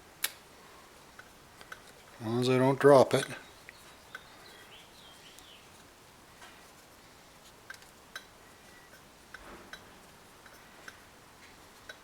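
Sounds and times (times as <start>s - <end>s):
faint clicks and light clinks: 1.1s - 2.2s, 7.6s - 12.0s.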